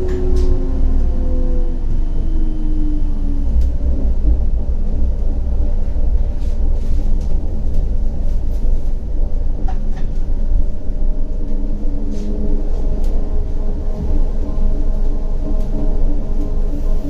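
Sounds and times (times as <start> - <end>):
humming tones: 0.0 - 17.0
tram rumbling: 0.0 - 17.0.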